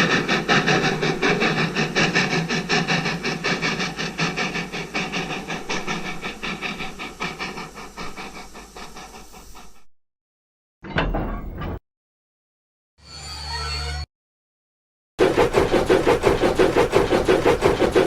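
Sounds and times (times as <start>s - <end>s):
rapid chugging with hiss: 0.0s - 9.9s, 15.2s - 18.0s.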